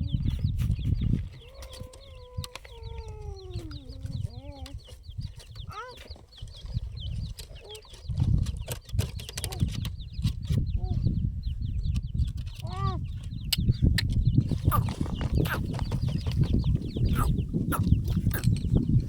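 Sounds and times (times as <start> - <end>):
wind rumble on microphone: 0.0 - 19.0
long falling bird call: 1.4 - 3.8
rapid high bird chirps: 3.4 - 8.1, 14.6 - 18.9.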